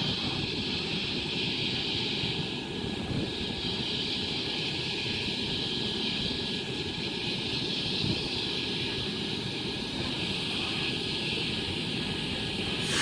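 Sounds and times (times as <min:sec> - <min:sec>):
electric train hiss and hum: 0:00.0 - 0:13.0.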